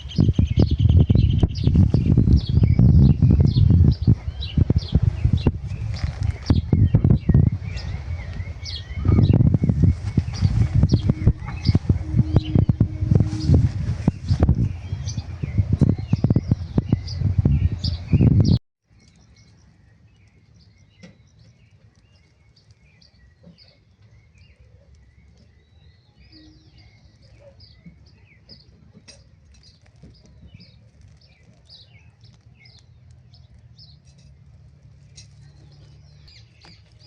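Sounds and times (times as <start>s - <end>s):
small birds chirping: 0.0s - 37.0s
loud rustling with knocks: 3.4s - 15.2s.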